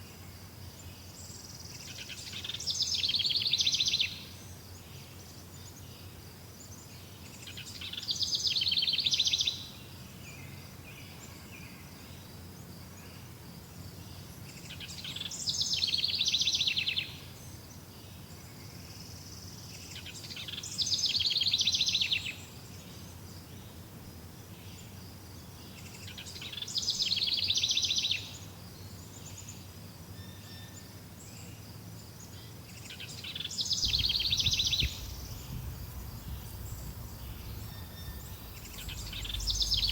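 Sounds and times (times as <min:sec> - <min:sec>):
faint high insect buzz: 0:32.3 - 0:39.9
songbird high trill: 0:33.6 - 0:39.9.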